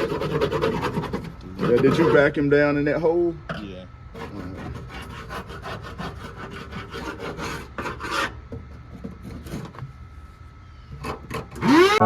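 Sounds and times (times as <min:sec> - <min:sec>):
abrasive scraping on metal: 0:00.0 - 0:02.4.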